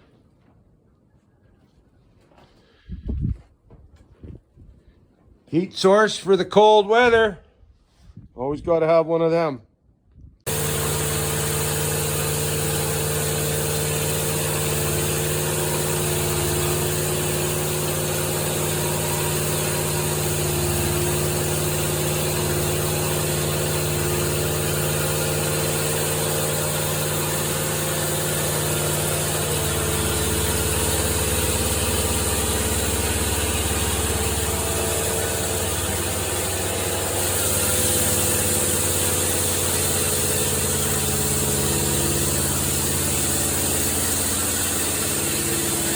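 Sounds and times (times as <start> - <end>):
engine running: 10.5 - 45.9.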